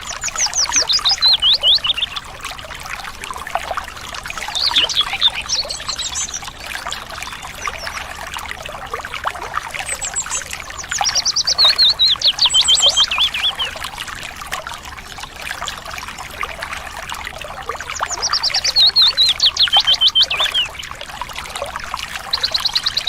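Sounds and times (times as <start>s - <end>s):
songbird singing trills: 0.0s - 2.3s, 4.3s - 8.2s, 9.8s - 13.8s, 18.0s - 21.0s, 22.2s - 23.0s
water trickling: 0.0s - 23.0s
faint bird chirps: 4.4s - 8.1s, 18.0s - 20.9s.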